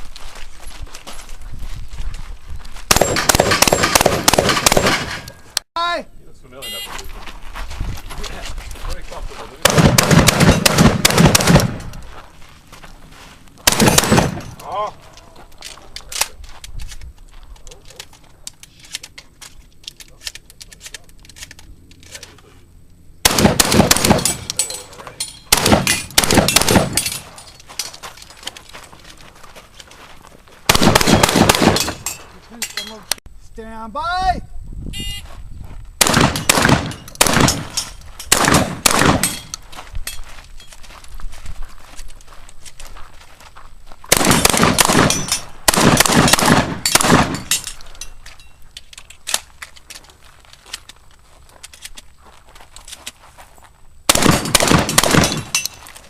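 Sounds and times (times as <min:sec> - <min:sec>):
shotgun shots with echo: 0:02.9 - 0:05.3, 0:09.6 - 0:11.9, 0:13.7 - 0:14.6, 0:23.2 - 0:24.6, 0:25.5 - 0:27.3, 0:30.7 - 0:32.0, 0:36.0 - 0:39.4, 0:44.1 - 0:47.6, 0:54.1 - 0:55.6.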